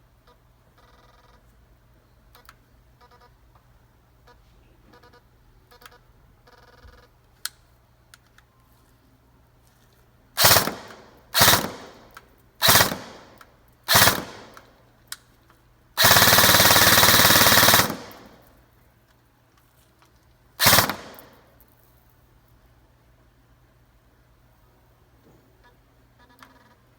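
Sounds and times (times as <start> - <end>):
faint electronic beeps: 4.2 - 7.1
airsoft rifle full-auto burst: 10.4 - 14.7, 16.0 - 18.5, 20.6 - 21.5
airsoft rifle single shots: 10.4 - 14.7, 20.6 - 21.4.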